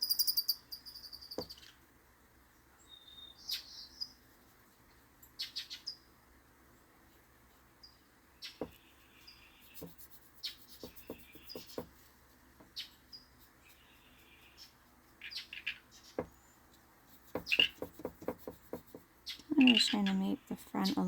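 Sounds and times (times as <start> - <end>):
bird chirps: 0.0 - 1.8, 2.8 - 4.2
paintbrush on paper: 9.5 - 15.3, 17.0 - 19.9.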